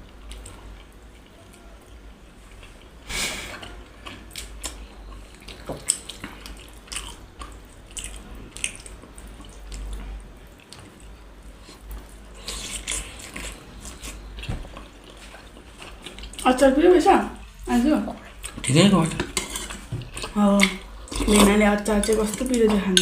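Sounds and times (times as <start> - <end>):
wet chewing with mouth smacks: 4.0 - 16.5, 18.2 - 22.8.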